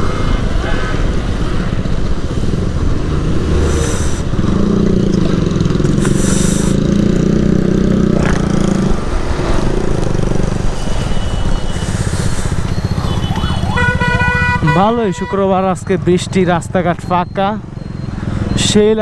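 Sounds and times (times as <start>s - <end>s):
motorcycle engine running: 3.9s - 10.8s.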